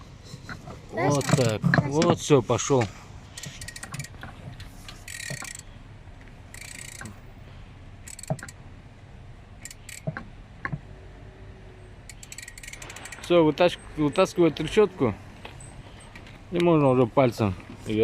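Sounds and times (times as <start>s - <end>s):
ratchet wrench clicking: 3.4s - 4.2s, 4.9s - 5.7s, 6.5s - 7.3s, 8.0s - 8.6s, 9.6s - 10.2s, 12.1s - 13.3s.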